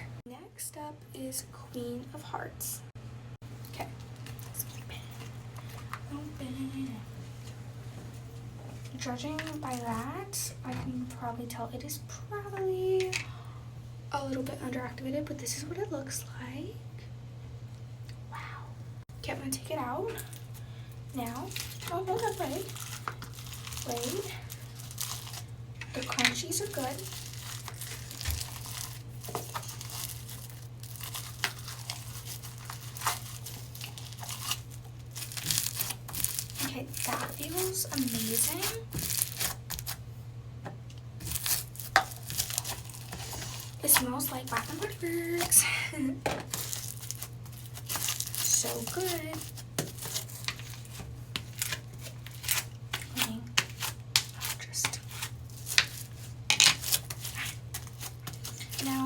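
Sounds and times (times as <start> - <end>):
steady low hum: 0.0 - 59.0
slime crackling and popping: 26.5 - 40.0, 41.2 - 45.6, 46.5 - 53.1.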